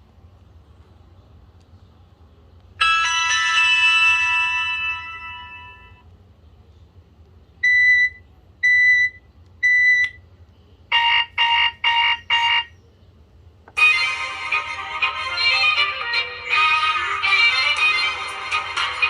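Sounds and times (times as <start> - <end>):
phone chime: 2.8 - 6.0.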